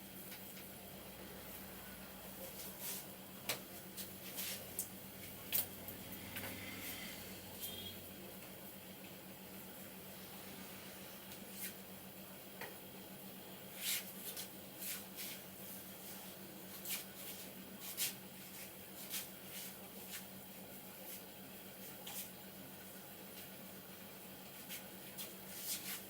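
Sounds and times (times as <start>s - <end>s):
hands rubbing and patting hair: 2.4s - 5.4s, 13.7s - 22.4s, 24.5s - 26.0s.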